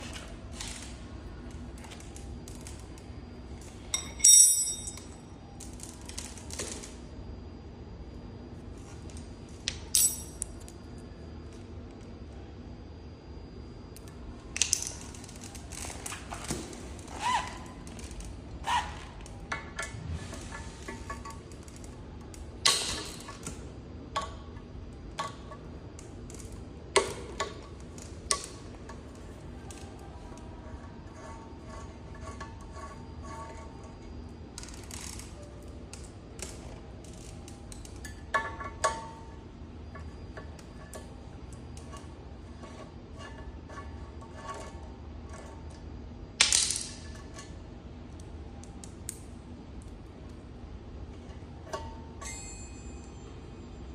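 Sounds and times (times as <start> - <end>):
tools and metal parts clicking: 1.8 - 6.9, 9.7 - 10.8, 19.2 - 45.8
ringing metallic clinks: 3.9 - 5.2, 9.9 - 10.4, 52.2 - 53.4.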